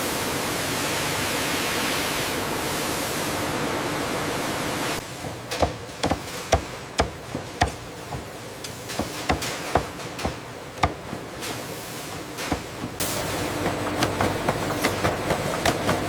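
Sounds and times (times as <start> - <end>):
sharp ringing knocks: 5.2 - 8.4, 9.0 - 11.3.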